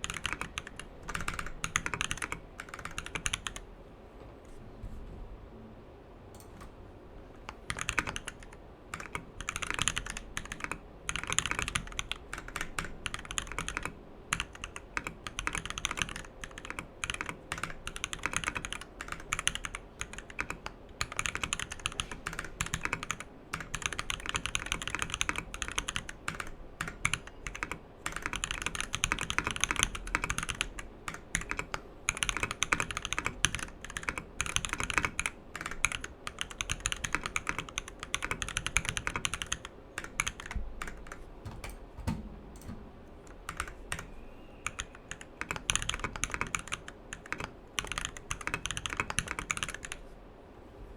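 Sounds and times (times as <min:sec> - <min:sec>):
mechanical keyboard typing: 0:00.0 - 0:03.6, 0:07.4 - 0:50.0.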